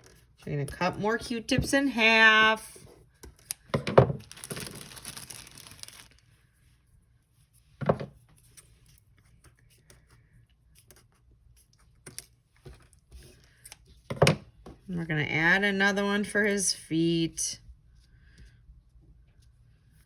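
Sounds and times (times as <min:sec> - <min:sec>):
crinkling rustling of craft materials: 0:00.0 - 0:15.0.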